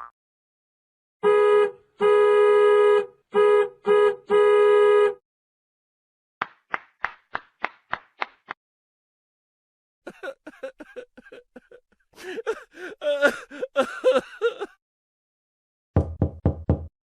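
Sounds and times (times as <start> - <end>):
buzzy horn-like tone honking: 1.2 - 5.2.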